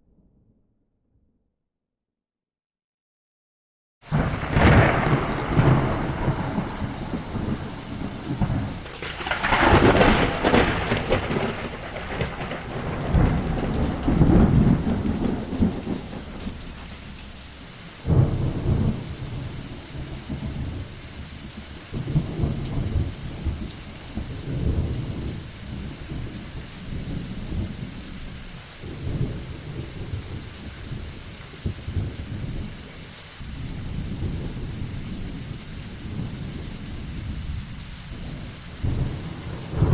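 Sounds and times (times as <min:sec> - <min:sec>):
steady rain: 0:04.0 - 0:39.9
sharp thunderclap: 0:04.1 - 0:20.9, 0:21.5 - 0:28.2, 0:36.1 - 0:39.9
rolling thunder: 0:04.1 - 0:32.8, 0:33.4 - 0:39.9.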